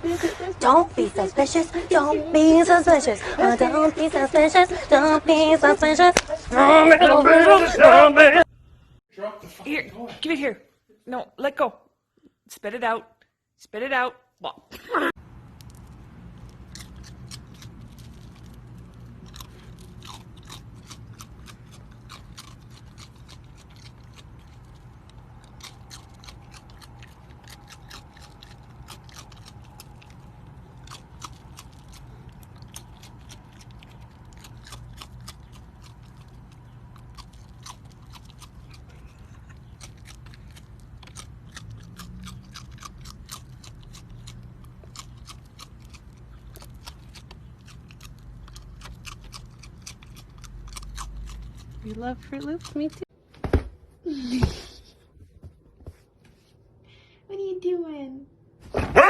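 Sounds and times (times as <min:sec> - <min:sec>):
animal chewing crunchy food: 0:15.4 - 0:53.1.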